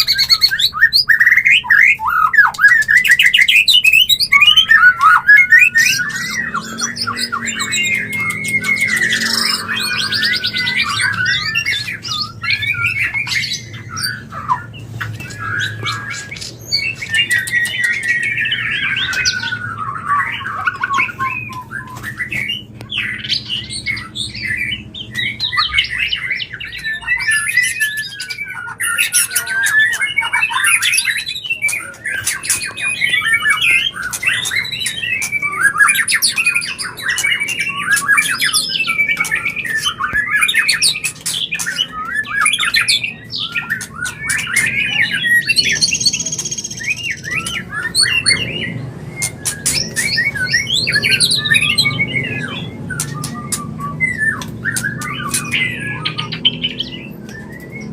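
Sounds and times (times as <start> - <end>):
bird singing whistled phrases: 0.0 - 57.9
sharp bird clicks: 52.9 - 57.8.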